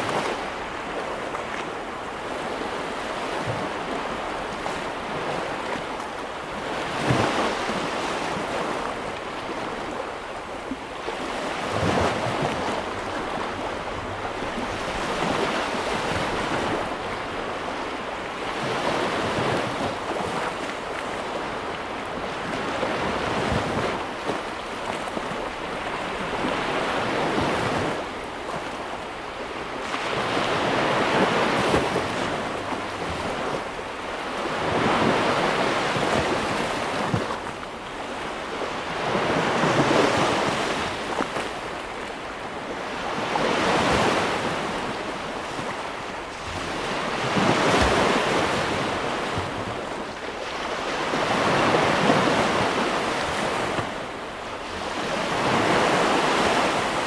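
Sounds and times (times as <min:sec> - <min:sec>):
ocean waves breaking: 0:00.0 - 0:57.0.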